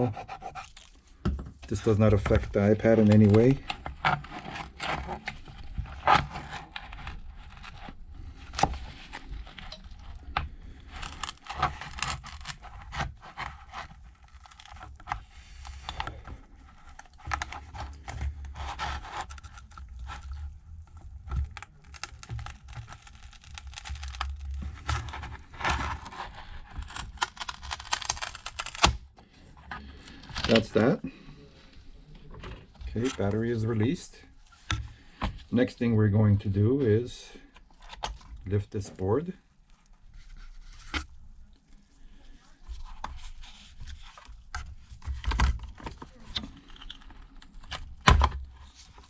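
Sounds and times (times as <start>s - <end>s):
pry tool scraping: 0.0s - 1.0s, 2.3s - 20.4s, 21.3s - 29.0s
adhesive crackling: 0.0s - 29.0s.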